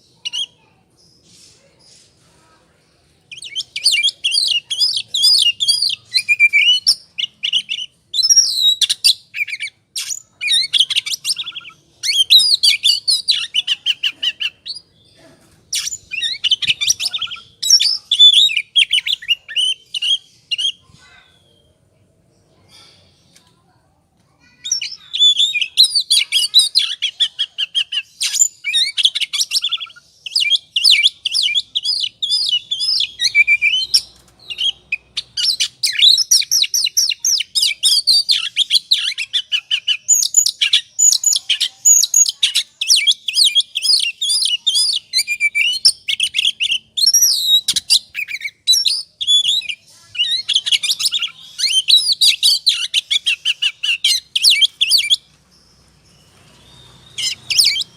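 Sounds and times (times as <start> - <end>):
bird singing chirps and trills: 3.0 - 23.6, 24.4 - 57.9.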